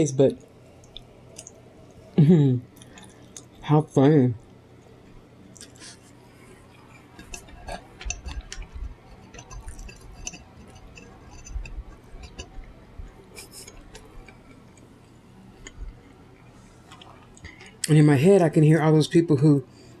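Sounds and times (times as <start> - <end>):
person chewing with lip smacks: 2.7 - 3.6, 5.5 - 5.9, 7.0 - 10.1, 15.6 - 17.9.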